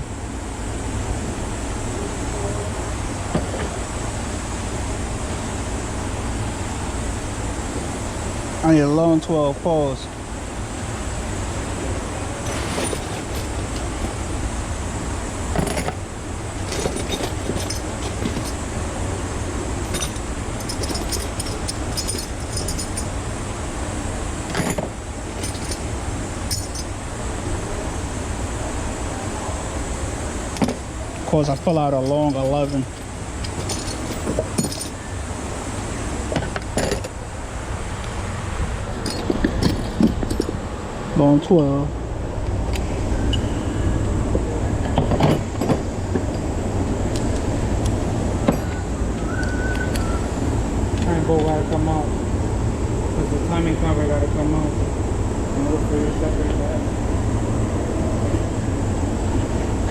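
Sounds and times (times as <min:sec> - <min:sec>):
steady background rumble: 0:00.0 - 0:59.9
hand tools clinking and rattling: 0:12.4 - 0:14.4, 0:15.5 - 0:18.8, 0:19.7 - 0:23.3, 0:24.4 - 0:27.0, 0:30.5 - 0:35.2, 0:36.3 - 0:37.2, 0:38.9 - 0:40.7, 0:44.8 - 0:50.2
metallic clinks of hand tools: 0:19.9 - 0:23.1, 0:26.5 - 0:26.9, 0:30.6 - 0:35.0.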